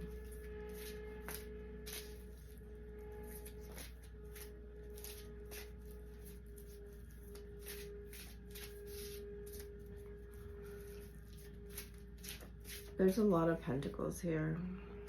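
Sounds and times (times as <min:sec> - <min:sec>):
steady low hum: 0:00.0 - 0:15.0
cards being shuffled: 0:00.7 - 0:02.6, 0:03.2 - 0:09.8, 0:10.4 - 0:13.0.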